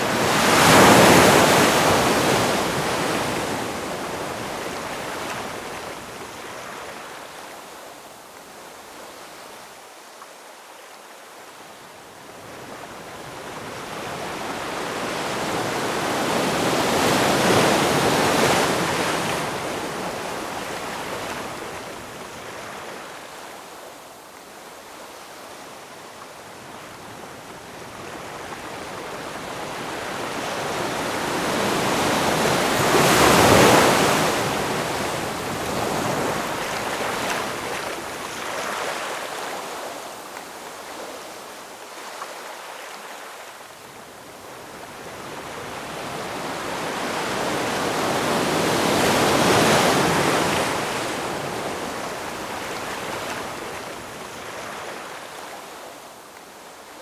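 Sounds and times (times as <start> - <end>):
ocean waves washing onto shore: 0.0 - 57.0.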